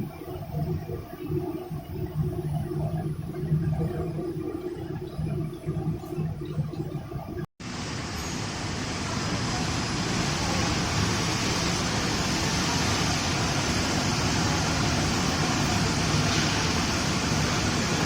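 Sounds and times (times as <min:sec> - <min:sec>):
welding machine rushing noise: 0:07.6 - 0:18.0.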